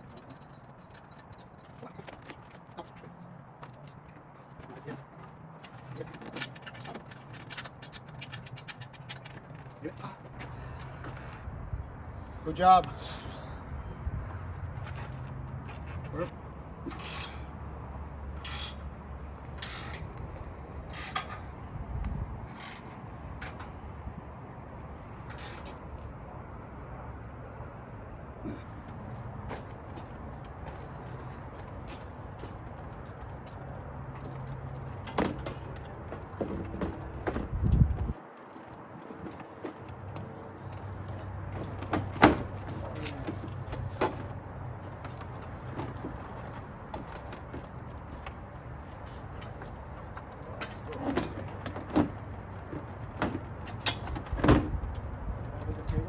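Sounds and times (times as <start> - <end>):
ratchet wrench clicking: 18.4 - 18.8, 19.6 - 20.1.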